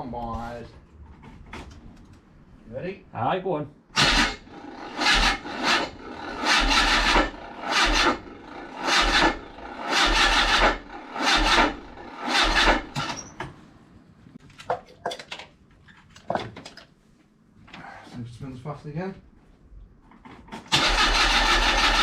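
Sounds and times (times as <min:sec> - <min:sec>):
engine cranking on starter: 0:04.0 - 0:13.2, 0:20.6 - 0:22.0.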